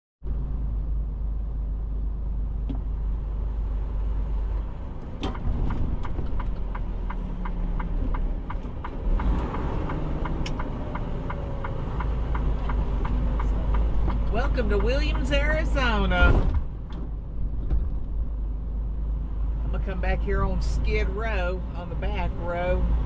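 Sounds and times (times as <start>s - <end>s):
diesel truck engine running: 0.2s - 23.0s
regular ticking: 5.3s - 15.9s.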